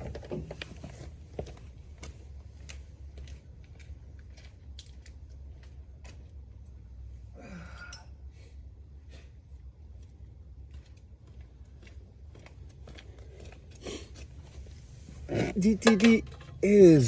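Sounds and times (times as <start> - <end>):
steady low hum: 1.4 - 17.0
hand tools clicking and clattering: 15.2 - 17.0.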